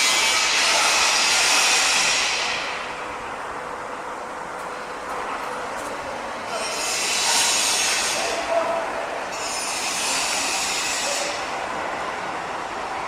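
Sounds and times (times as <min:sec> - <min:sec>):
loud high hiss: 0:00.0 - 0:03.1.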